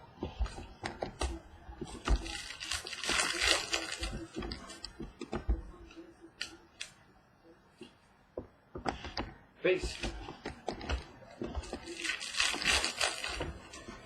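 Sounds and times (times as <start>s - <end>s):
pack wrapper ripping: 2.2s - 4.3s, 11.9s - 13.6s.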